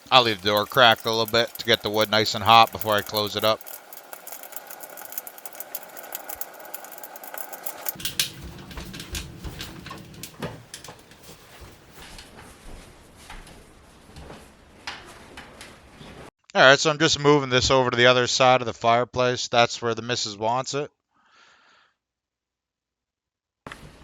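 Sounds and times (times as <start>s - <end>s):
steady hiss: 0.0s - 8.4s
firewood crackling in a stove: 0.0s - 12.8s.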